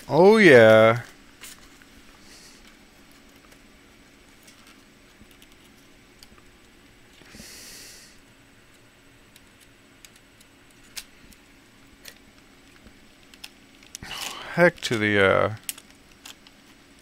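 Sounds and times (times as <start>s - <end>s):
small laptop parts clicking: 4.4s - 6.4s, 8.7s - 14.3s, 15.6s - 17.0s.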